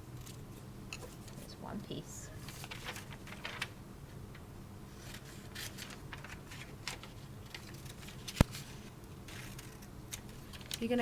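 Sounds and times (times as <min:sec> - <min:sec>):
paper rustling: 0:02.4 - 0:03.8, 0:04.9 - 0:09.9.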